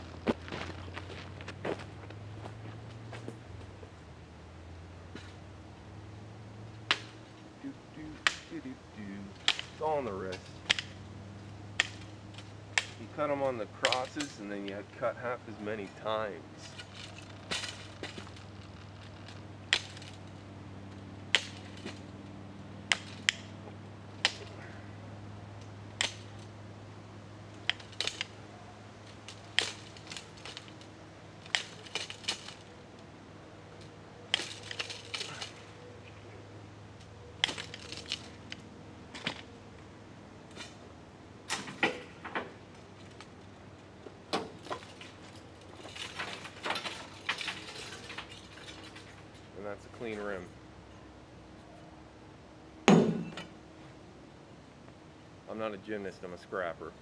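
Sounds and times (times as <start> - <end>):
steady low hum: 0.0 - 57.0
spokes snapping under cutters: 6.7 - 26.6, 27.5 - 43.4.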